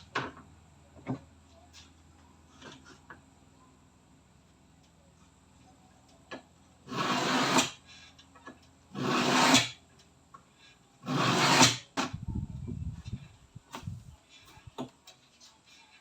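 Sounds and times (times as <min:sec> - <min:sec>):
rasping strokes: 0:06.9 - 0:07.8, 0:09.0 - 0:09.8, 0:11.0 - 0:11.9.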